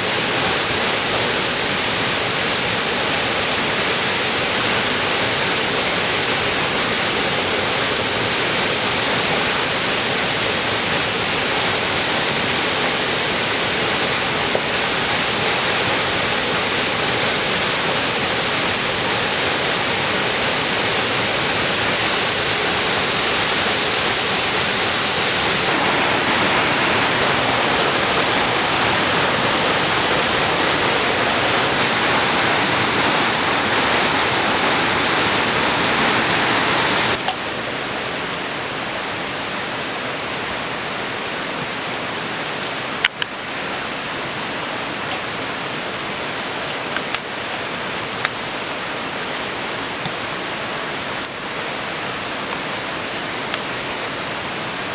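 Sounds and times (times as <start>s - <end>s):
waterfall rushing: 0.0s - 41.4s.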